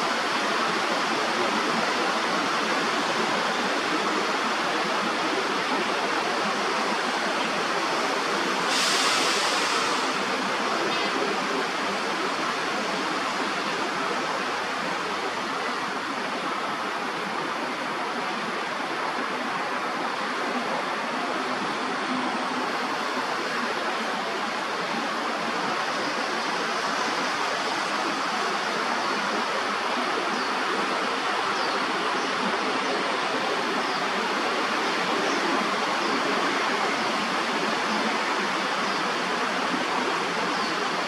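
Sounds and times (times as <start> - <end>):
rushing background noise: 0.0 - 41.0
high hiss: 7.9 - 12.5.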